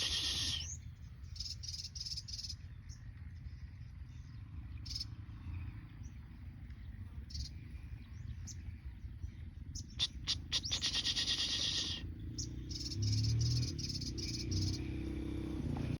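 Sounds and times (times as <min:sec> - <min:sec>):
bird buzzy trill: 0:00.0 - 0:00.8, 0:10.0 - 0:12.0
birds chirping: 0:00.0 - 0:15.9.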